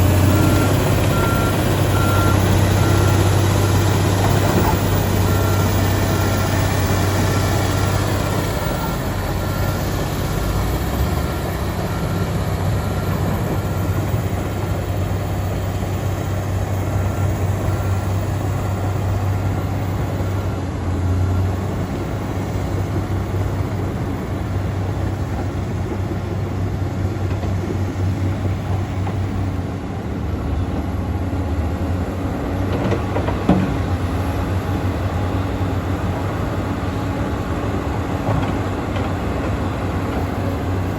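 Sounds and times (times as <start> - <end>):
bulldozer diesel engine droning: 0.0 - 40.9.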